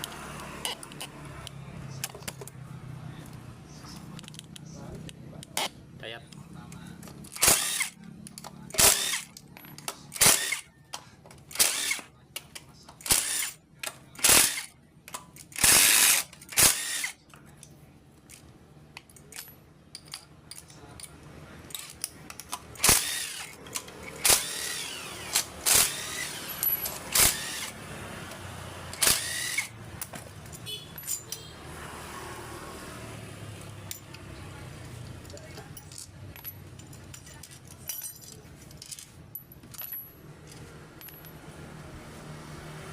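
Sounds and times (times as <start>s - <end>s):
metallic clinks and knocks: 7.0s - 10.3s, 17.3s - 22.8s, 30.0s - 31.5s, 33.6s - 41.5s
power tool bursts: 7.4s - 8.0s, 8.8s - 9.3s, 10.2s - 10.6s, 15.6s - 17.2s, 22.8s - 27.8s, 28.9s - 29.8s.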